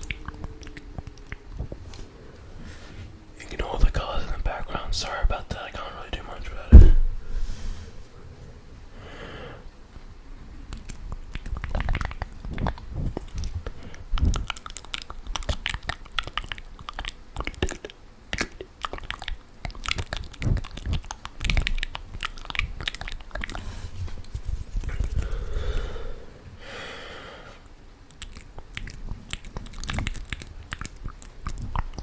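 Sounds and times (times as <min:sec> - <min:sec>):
wet mouth clicks and smacks: 0:10.7 - 0:23.6, 0:28.1 - 0:32.0.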